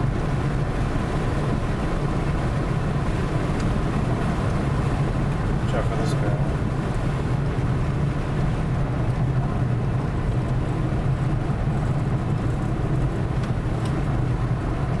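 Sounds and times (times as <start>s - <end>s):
car engine hum: 0.0s - 15.0s
road noise: 0.0s - 15.0s.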